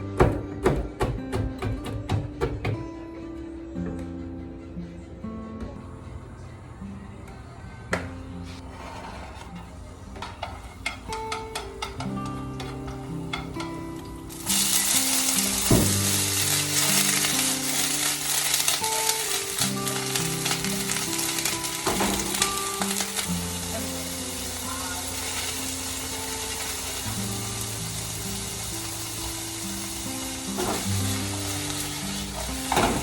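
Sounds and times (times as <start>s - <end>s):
food sizzling in oil: 12.6s - 33.0s.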